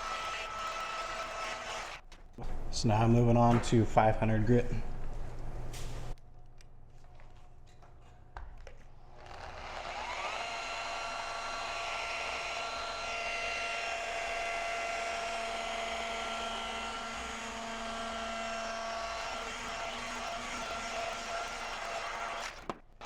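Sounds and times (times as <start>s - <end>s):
electric sander whining: 0.0s - 2.0s, 9.2s - 22.8s.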